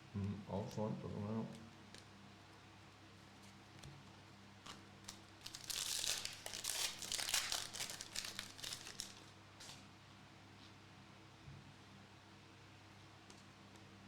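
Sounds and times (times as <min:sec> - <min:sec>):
wrapper tearing and crinkling: 0:04.6 - 0:09.8.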